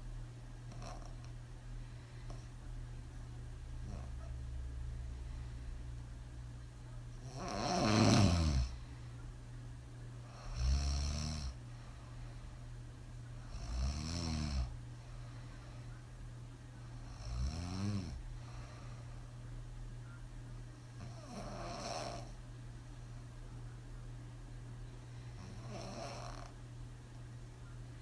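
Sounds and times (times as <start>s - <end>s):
woman snoring deeply: 7.2s - 8.8s, 10.3s - 11.6s, 13.5s - 14.7s, 17.0s - 18.2s, 21.0s - 22.4s, 25.4s - 26.5s.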